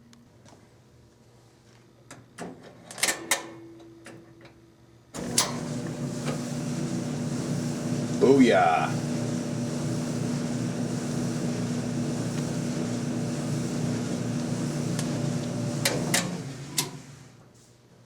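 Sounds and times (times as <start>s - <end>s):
clothes dryer running: 5.2s - 17.6s.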